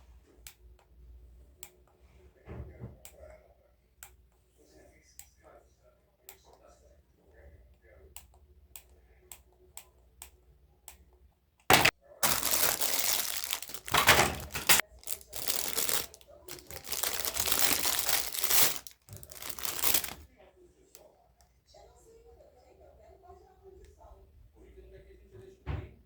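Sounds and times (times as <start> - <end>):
packaging crinkling and rustling: 11.7 - 20.2.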